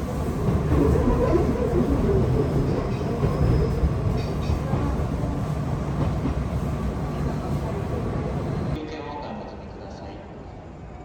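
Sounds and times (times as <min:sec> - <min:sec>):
train wheels rumbling: 0:00.0 - 0:08.8.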